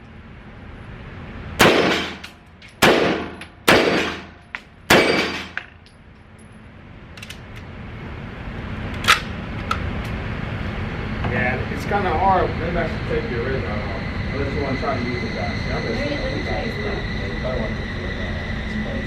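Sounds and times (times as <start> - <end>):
rifle shots with echo: 1.6 - 2.2, 2.8 - 4.3, 4.9 - 5.6
sharp crack: 1.6 - 4.3.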